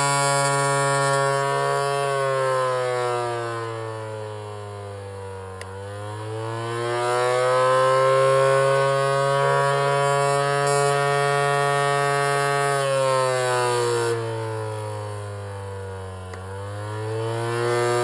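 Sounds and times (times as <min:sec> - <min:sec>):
pitching machine motor wailing: 0:00.0 - 0:02.5, 0:06.8 - 0:12.7.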